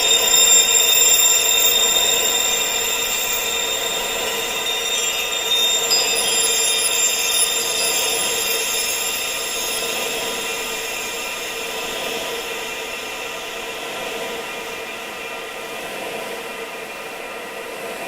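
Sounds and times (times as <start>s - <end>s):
wind chimes ringing: 0.0s - 14.6s
steady wind-like hiss: 0.0s - 18.0s.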